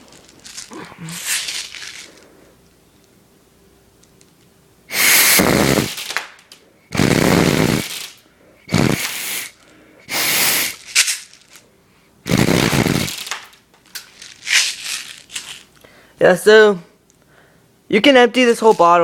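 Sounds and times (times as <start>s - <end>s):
air bursts from homemade gun: 4.9s - 11.4s, 12.3s - 13.5s.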